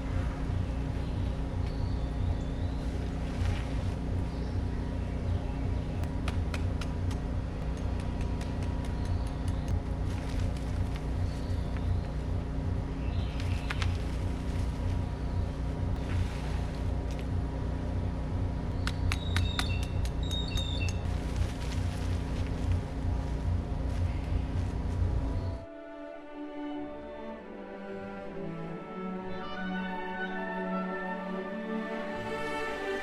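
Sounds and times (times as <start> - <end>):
skid steer engine running: 0.0 - 25.6.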